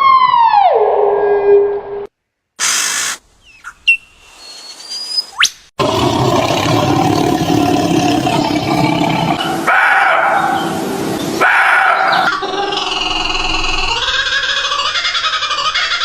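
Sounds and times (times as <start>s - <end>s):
dogs barking: 9.4s - 10.8s, 11.4s - 12.3s.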